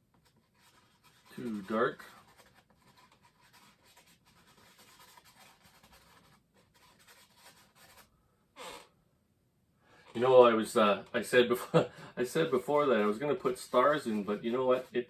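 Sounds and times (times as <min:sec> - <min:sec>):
paintbrush scratching on canvas: 0:00.1 - 0:08.8, 0:12.2 - 0:15.0.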